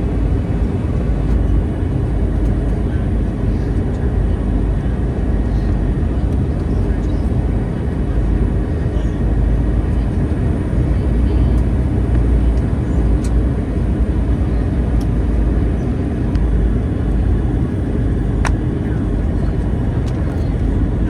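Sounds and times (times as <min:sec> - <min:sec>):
airplane cabin engine rumble: 0:00.0 - 0:21.0.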